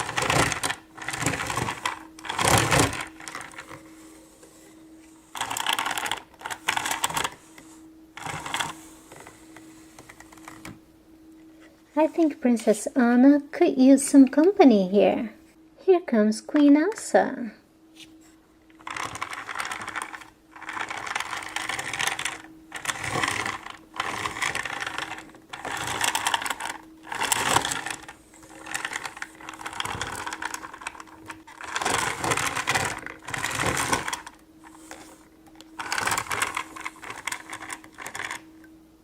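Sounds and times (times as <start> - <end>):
toy sleigh whirring and rattling: 0.0 - 10.8, 18.7 - 38.5.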